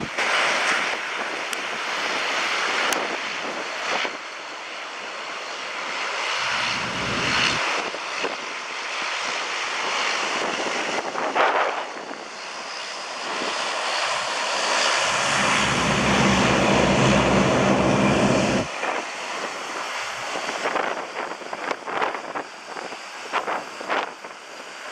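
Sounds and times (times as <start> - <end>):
jet airliner hiss and rumble: 0.0 - 24.9
wind buffeting microphone: 5.8 - 24.9.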